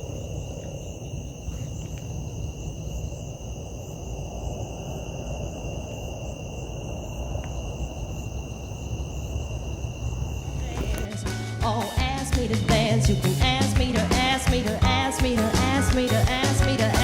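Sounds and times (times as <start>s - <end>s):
insects trilling: 0.0s - 11.3s.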